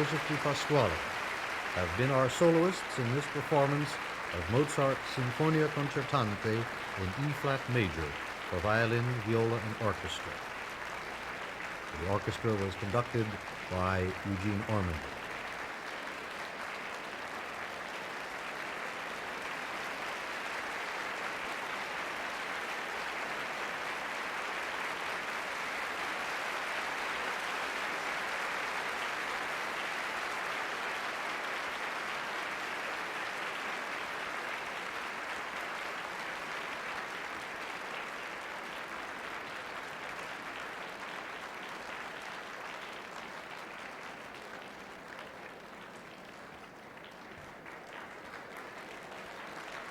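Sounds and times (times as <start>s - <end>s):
audience applauding: 0.0s - 49.9s.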